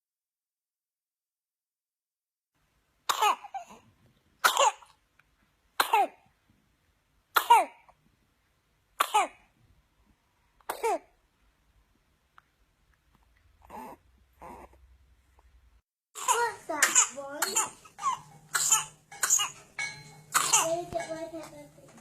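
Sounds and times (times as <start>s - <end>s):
baby coughing: 3.1s - 3.8s, 4.4s - 5.0s, 5.8s - 6.2s, 7.4s - 7.9s, 9.0s - 9.5s, 10.6s - 11.2s, 16.2s - 21.2s.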